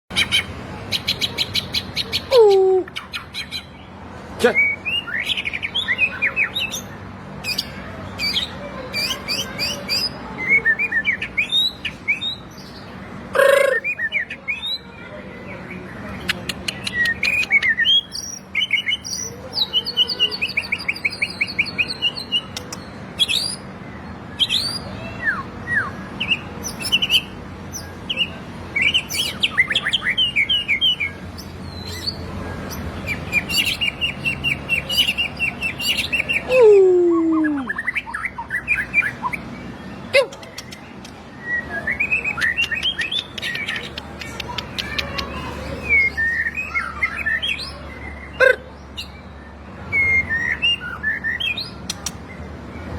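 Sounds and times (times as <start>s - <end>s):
bird singing whistles and trills: 45.4s - 52.4s.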